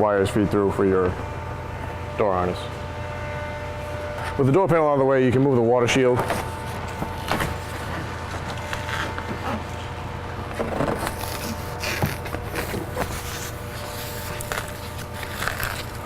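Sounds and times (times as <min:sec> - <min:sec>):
steady background hum: 0:00.0 - 0:16.0
plastic crinkling and rustling: 0:10.6 - 0:16.0.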